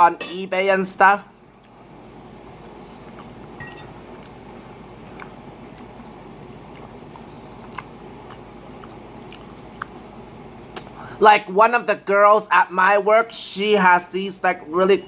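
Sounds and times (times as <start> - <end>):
person chewing food: 1.6 - 10.1.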